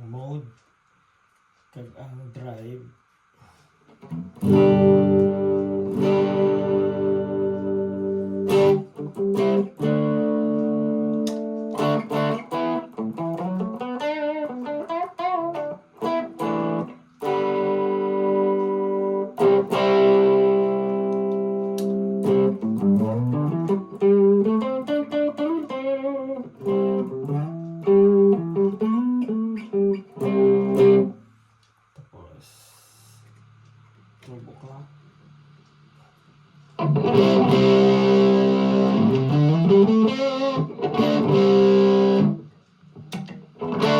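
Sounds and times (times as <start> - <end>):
overdriven electric guitar: 3.9 - 31.2, 36.6 - 43.9.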